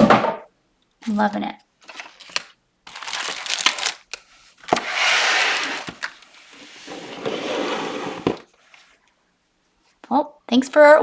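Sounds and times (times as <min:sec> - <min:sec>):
rustling: 0:01.8 - 0:09.0.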